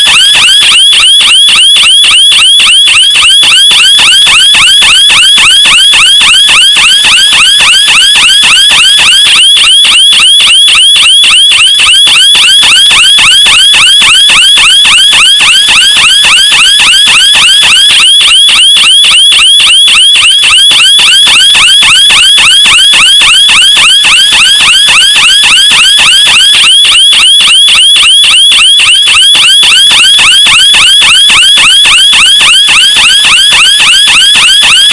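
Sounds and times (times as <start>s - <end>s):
car alarm siren: 0.0s - 34.9s.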